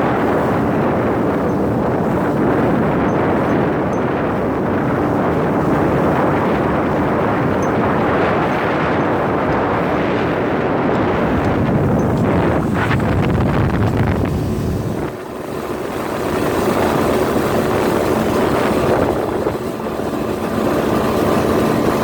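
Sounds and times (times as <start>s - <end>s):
outboard motor running: 0.0s - 22.0s
water rushing: 0.0s - 22.0s
wind buffeting microphone: 0.0s - 22.0s.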